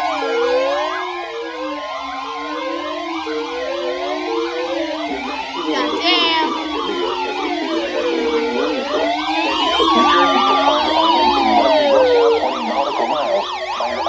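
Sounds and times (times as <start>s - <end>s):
sirens wailing: 0.0s - 14.0s
sirens yelping: 0.0s - 14.0s.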